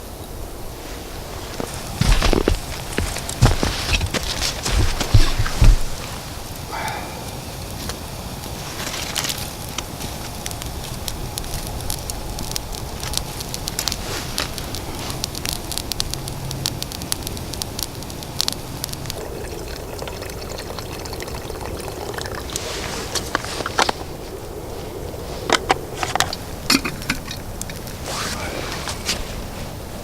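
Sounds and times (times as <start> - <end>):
campfire crackling: 0.0 - 30.0.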